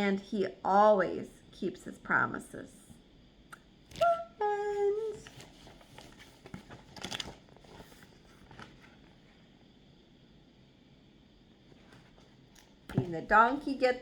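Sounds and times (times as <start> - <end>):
crinkling rustle: 5.1 - 9.2.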